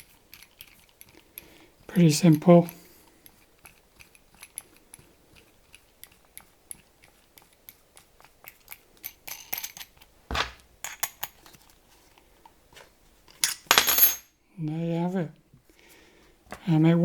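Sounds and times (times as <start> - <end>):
small hardware clicking and clinking: 8.4 - 10.1.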